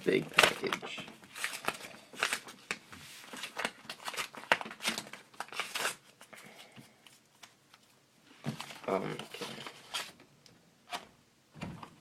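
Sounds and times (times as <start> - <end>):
packaging crinkling and tearing: 0.2 - 6.2.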